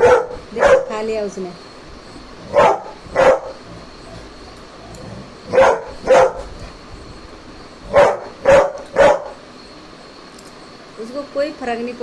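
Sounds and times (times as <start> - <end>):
dog barking: 0.0 - 1.1, 2.4 - 3.8, 5.4 - 6.6, 7.8 - 9.4.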